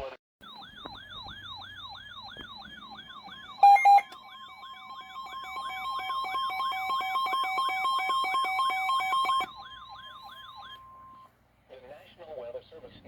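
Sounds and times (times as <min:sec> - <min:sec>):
electronic siren sweeping: 0:00.4 - 0:11.3.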